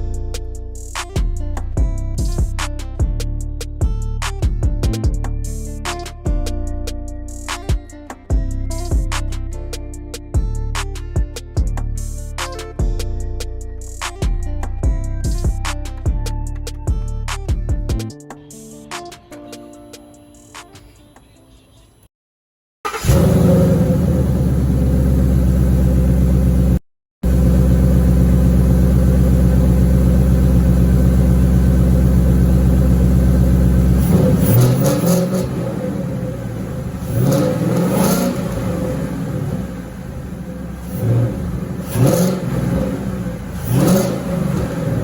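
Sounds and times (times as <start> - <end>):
car engine idling: 22.9 - 45.0
engine revving: 22.9 - 45.0.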